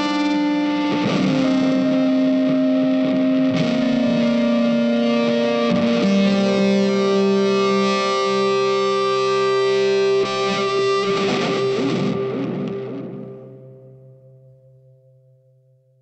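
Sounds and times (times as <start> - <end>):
guitar playing long notes: 0.0 - 15.6.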